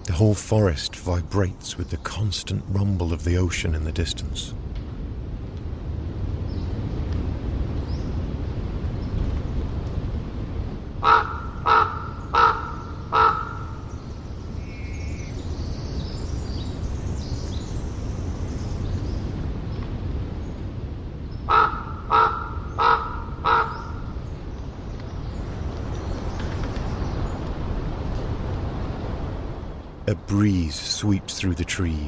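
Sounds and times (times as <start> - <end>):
distant ocean surf: 0.0 - 4.7, 27.2 - 32.0
raven harsh calls: 11.0 - 13.8, 21.5 - 24.0.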